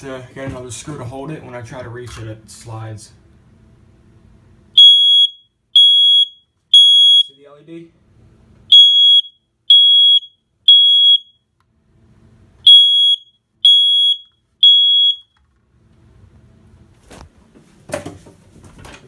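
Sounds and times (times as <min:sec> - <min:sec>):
smoke detector beeping: 0:04.7 - 0:07.4, 0:08.7 - 0:11.5, 0:12.6 - 0:15.4.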